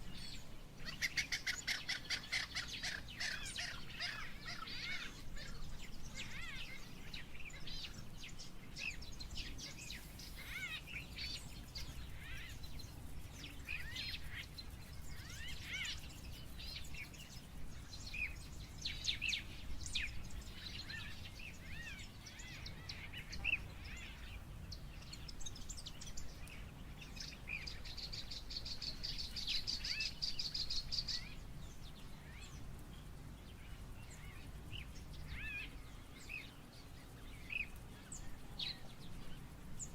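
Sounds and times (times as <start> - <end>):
birds chirping and calling: 0.1 - 24.4
steady low rumble: 7.0 - 22.1.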